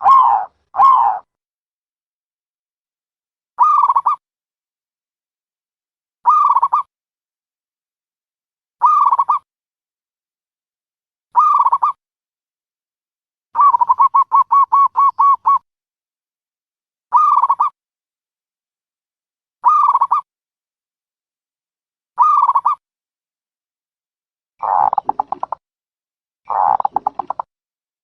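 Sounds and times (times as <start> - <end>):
dove cooing: 0.0 - 1.3, 13.6 - 15.6, 24.6 - 25.6, 26.5 - 27.4.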